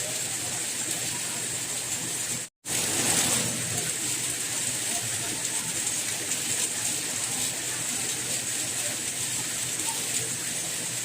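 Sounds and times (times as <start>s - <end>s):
steady rain hiss: 0.0s - 11.0s.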